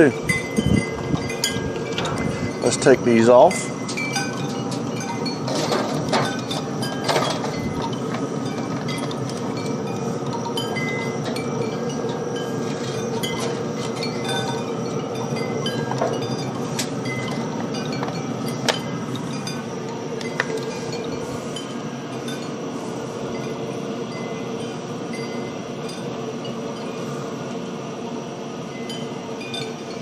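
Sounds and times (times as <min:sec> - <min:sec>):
high chime-like tinkles: 0:00.0 - 0:05.6, 0:06.2 - 0:22.6, 0:28.8 - 0:30.0
steady hum: 0:00.0 - 0:30.0.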